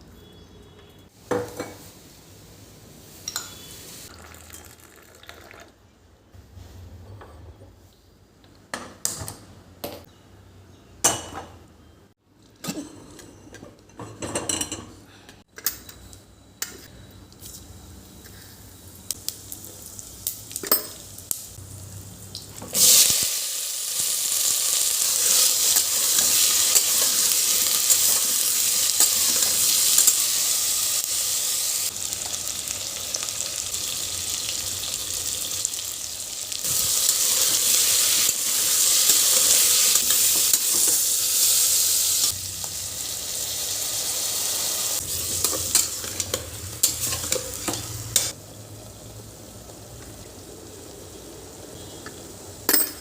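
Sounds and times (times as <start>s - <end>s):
food sizzling in hot oil: 22.3s - 51.9s.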